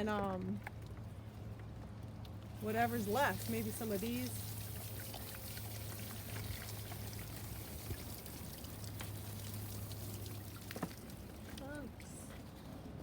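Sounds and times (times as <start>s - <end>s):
water running and pouring: 2.6s - 11.6s.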